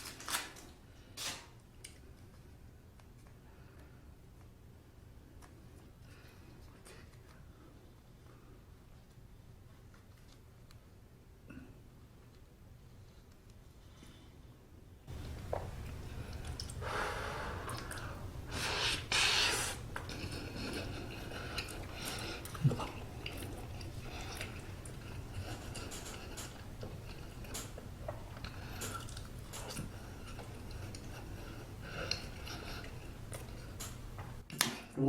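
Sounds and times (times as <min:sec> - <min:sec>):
steady low hum: 0:00.8 - 0:34.5
close chewing with mouth clicks: 0:15.1 - 0:16.9, 0:17.5 - 0:34.4.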